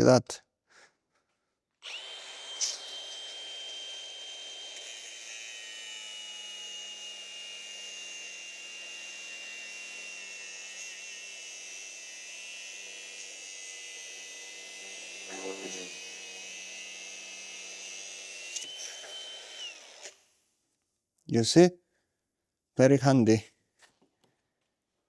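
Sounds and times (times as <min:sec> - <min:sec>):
angle grinder cutting metal: 0:01.8 - 0:20.3.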